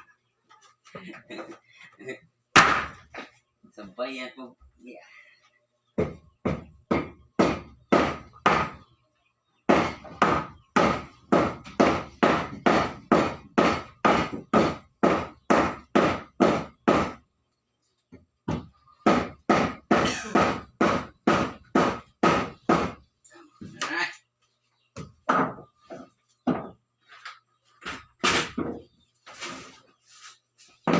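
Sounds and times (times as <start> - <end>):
hammer blows on wooden flooring: 5.9 - 8.9, 9.7 - 17.2, 18.4 - 23.0.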